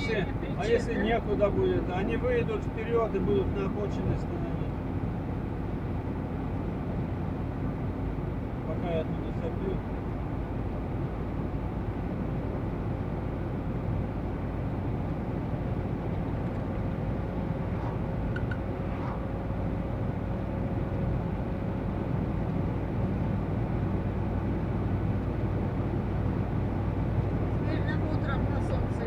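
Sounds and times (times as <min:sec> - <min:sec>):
van engine and road noise: 0:00.0 - 0:29.0.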